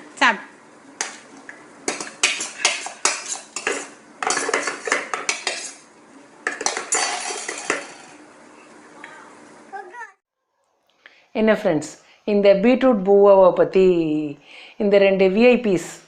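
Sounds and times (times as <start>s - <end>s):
spoons clinking on plates: 1.9s - 8.2s.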